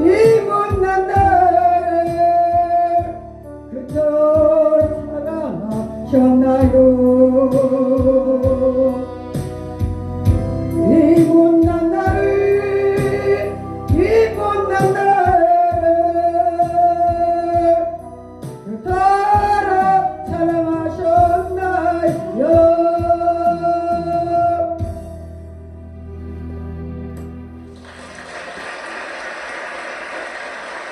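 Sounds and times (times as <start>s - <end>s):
person singing a hymn: 0.0s - 9.4s, 10.6s - 25.0s
instrumental accompaniment with beat: 0.0s - 25.7s.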